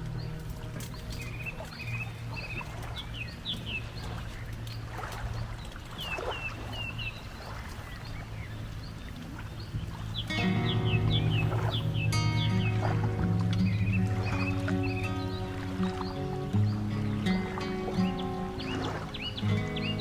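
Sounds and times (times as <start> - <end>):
small birds chirping: 0.0 - 20.0
low hum: 9.2 - 20.0.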